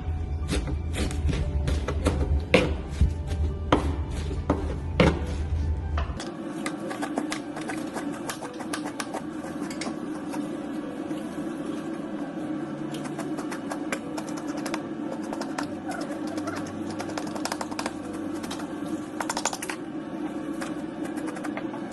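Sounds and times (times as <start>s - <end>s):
steady low hum: 0.0s - 21.9s
knife chopping on cutting board: 0.5s - 5.3s.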